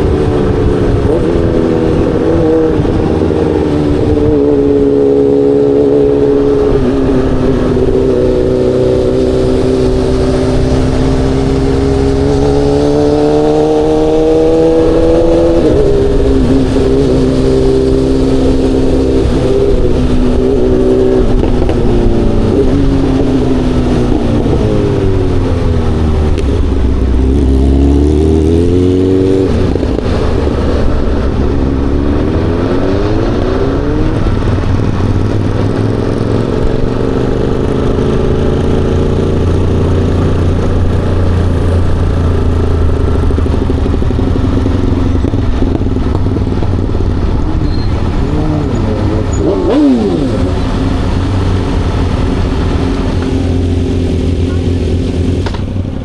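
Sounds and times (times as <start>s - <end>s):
motorcycle engine shifting gears: 0.0s - 56.0s.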